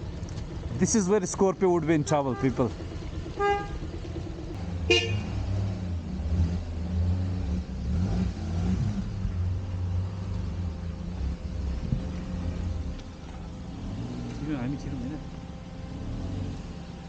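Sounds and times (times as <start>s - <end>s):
motorbike engine revving: 0.6s - 17.0s
horn beep: 2.2s - 2.8s, 3.4s - 3.9s, 4.8s - 5.4s.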